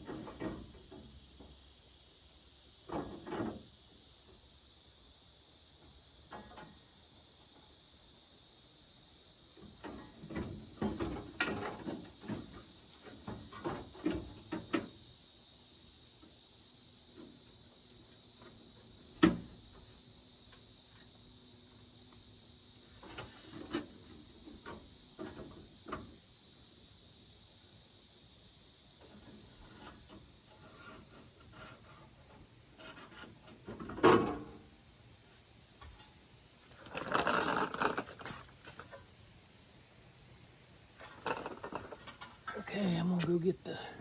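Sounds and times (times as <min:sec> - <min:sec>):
faint steady hiss: 0:00.0 - 0:44.0
rattling scrape: 0:36.7 - 0:39.0, 0:41.0 - 0:42.6.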